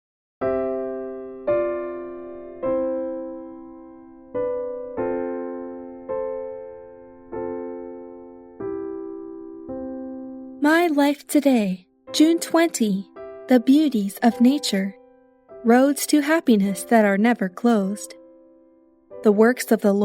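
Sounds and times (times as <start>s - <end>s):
slow solo piano chords: 0.4s - 10.6s.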